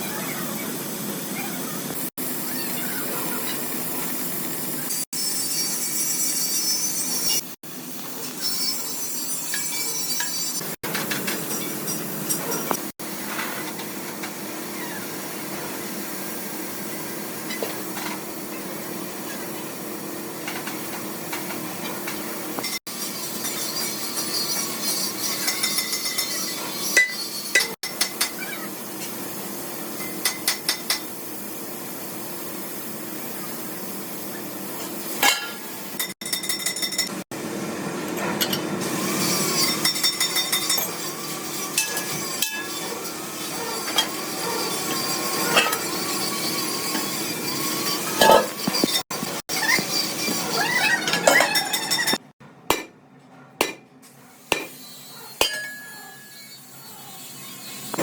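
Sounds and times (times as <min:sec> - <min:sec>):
metal tools clinking: 0:48.1 - 0:49.0, 0:55.4 - 0:56.6.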